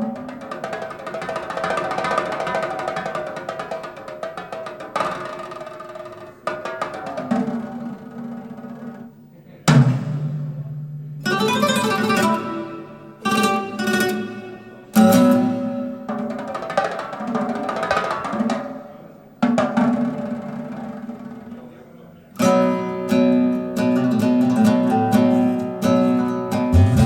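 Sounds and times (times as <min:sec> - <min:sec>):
plucked string music over loudspeakers: 0:10.5 - 0:19.0, 0:22.4 - 0:27.0.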